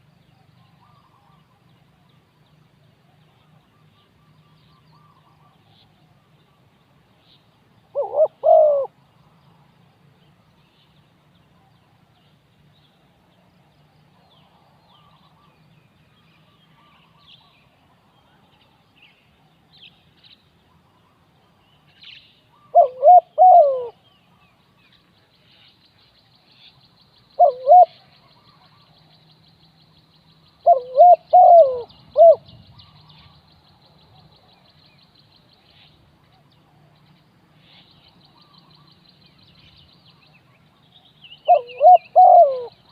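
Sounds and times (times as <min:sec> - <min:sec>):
dove cooing: 0:07.9 - 0:08.9, 0:22.6 - 0:24.0, 0:27.4 - 0:28.8, 0:30.6 - 0:33.4, 0:41.4 - 0:42.8.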